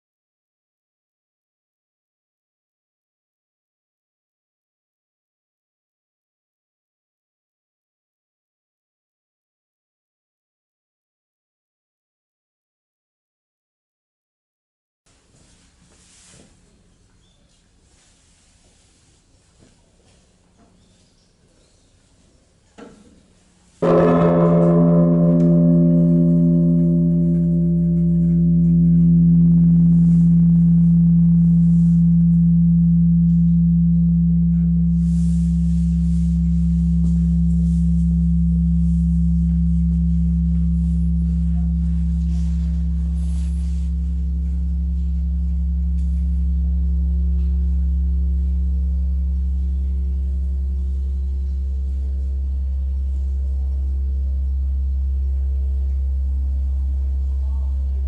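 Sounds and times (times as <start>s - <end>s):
temple bell ringing: 23.8s - 58.0s.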